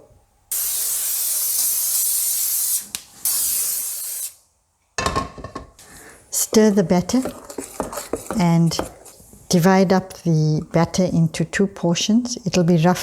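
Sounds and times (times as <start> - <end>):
cooking spray hissing: 0.5 - 4.5, 5.8 - 8.3.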